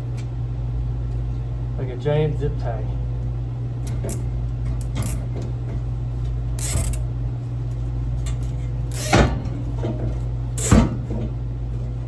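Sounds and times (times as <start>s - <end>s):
cable tie strap rasping: 8.9s - 9.2s, 10.6s - 10.8s.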